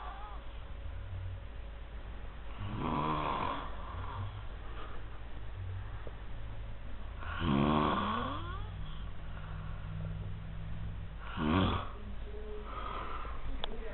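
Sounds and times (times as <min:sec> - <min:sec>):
woman snoring loudly: 0:00.0 - 0:00.4, 0:02.5 - 0:04.4, 0:07.2 - 0:09.1, 0:11.2 - 0:12.0
steady low hum: 0:00.0 - 0:13.9.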